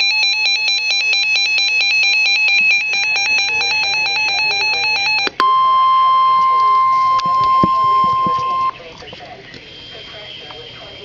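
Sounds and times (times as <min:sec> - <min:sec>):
electronic warbling alert tone: 0:01.6 - 0:08.8.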